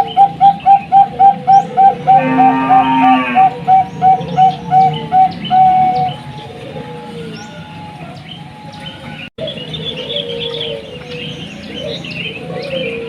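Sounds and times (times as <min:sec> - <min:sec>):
small birds chirping: 0:00.0 - 0:02.3, 0:03.1 - 0:13.0
dove cooing: 0:00.0 - 0:13.0.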